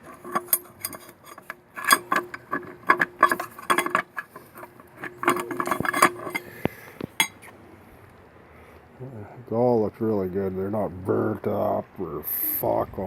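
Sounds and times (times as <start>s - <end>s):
metal clutch plates clinking: 0.0s - 7.5s.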